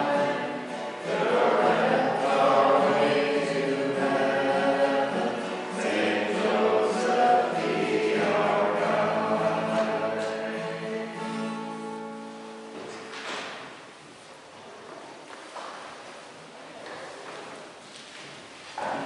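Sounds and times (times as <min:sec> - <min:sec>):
voices singing a hymn: 0:00.0 - 0:12.1.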